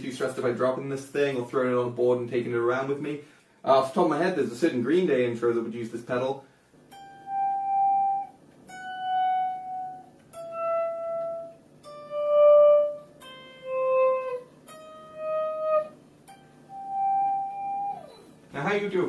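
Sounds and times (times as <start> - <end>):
electric guitar volume swells: 7.2 - 18.3.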